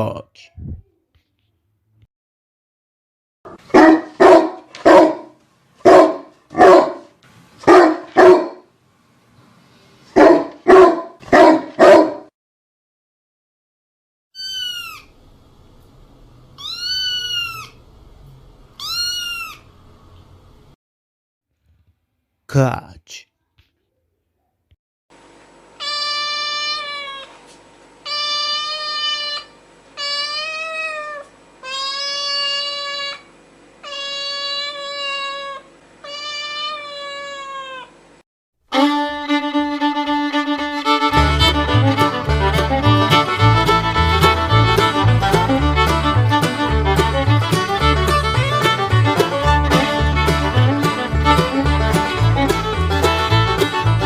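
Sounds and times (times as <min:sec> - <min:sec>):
dog barking: 0:03.6 - 0:08.7, 0:10.2 - 0:12.3
cat meowing: 0:14.4 - 0:15.1, 0:16.6 - 0:17.8, 0:18.8 - 0:19.7, 0:25.8 - 0:27.4, 0:28.1 - 0:33.2, 0:33.8 - 0:37.9.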